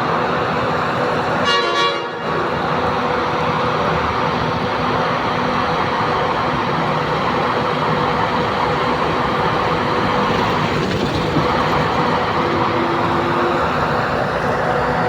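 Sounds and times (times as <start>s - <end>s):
heavy engines running: 0.0s - 15.0s.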